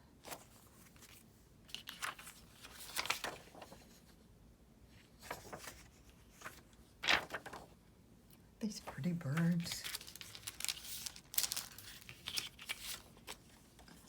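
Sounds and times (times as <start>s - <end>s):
paper rustling: 0.2s - 4.2s, 5.0s - 7.8s, 8.7s - 14.0s.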